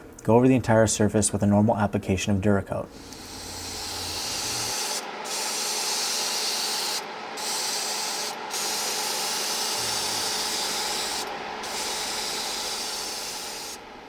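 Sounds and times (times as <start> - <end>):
spray gun hissing: 2.9 - 13.8.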